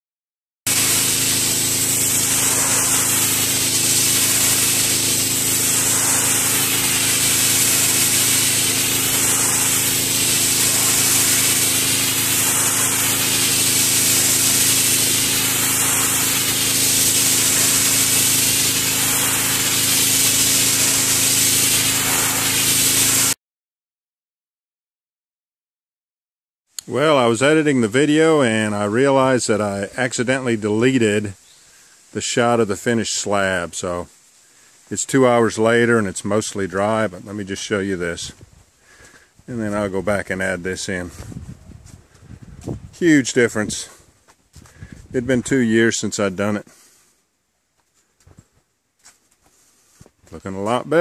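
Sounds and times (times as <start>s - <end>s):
high-pressure spray hissing on concrete: 0.7s - 23.4s, 46.2s - 47.1s
pressure washer engine running: 0.7s - 23.4s.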